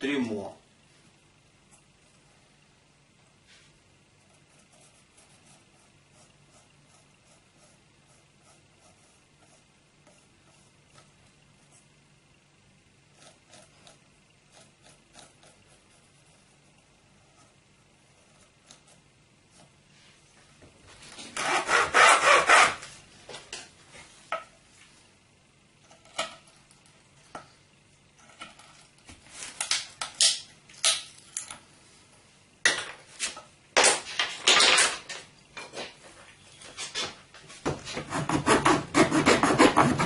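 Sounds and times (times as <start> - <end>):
hand tool strokes on wood: 21.1 - 23.0.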